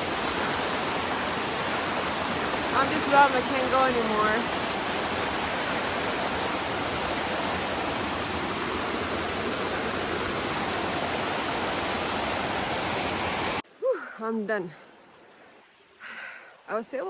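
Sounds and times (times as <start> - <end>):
waterfall rushing: 0.0 - 13.6.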